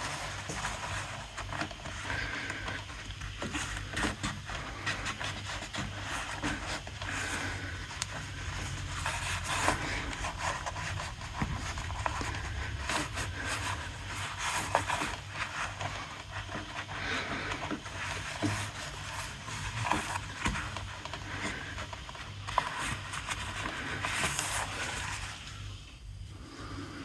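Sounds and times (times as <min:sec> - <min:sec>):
scrapes clicks and rustles of hands: 0:00.0 - 0:25.7.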